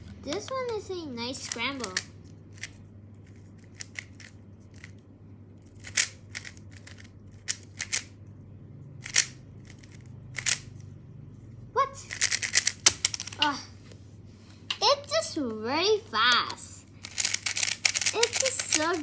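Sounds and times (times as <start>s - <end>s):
speed cube clicking: 1.4s - 2.8s, 3.6s - 4.9s, 5.8s - 8.2s, 9.0s - 10.7s, 12.1s - 13.5s, 16.4s - 19.0s.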